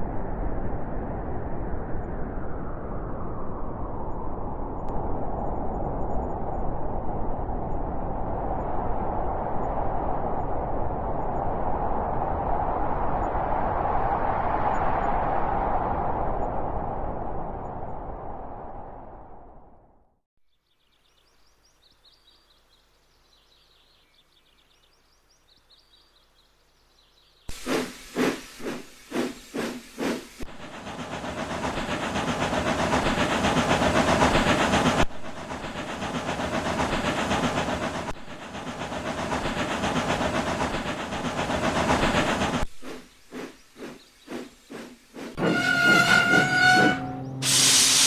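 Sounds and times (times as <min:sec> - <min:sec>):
continuous steam hiss: 0:27.0 - 0:45.4, 0:47.4 - 0:48.0
steam locomotive chuffing: 0:27.5 - 0:48.0.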